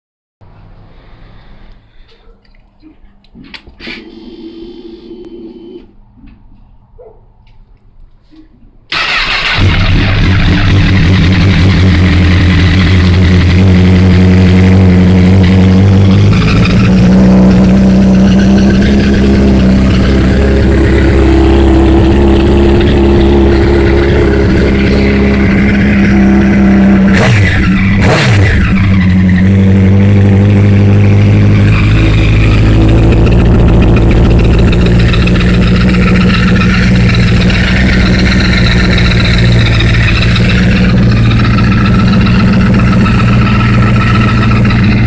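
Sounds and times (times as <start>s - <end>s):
motorcycle engine idling: 8.9s - 45.0s.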